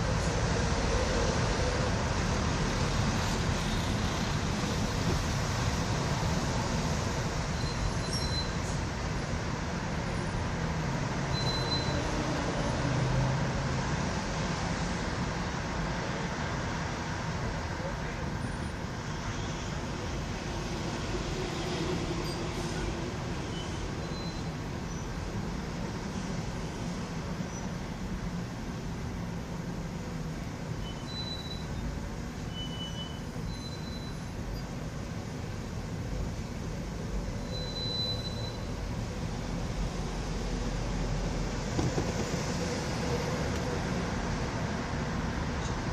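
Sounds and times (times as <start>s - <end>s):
rumble of vehicles crossing bridge: 0.0s - 45.9s
faint high squeal: 7.6s - 8.7s, 11.3s - 12.1s, 23.5s - 25.1s, 30.8s - 34.8s, 37.4s - 38.8s
train wheels rumbling on track: 33.4s - 45.9s.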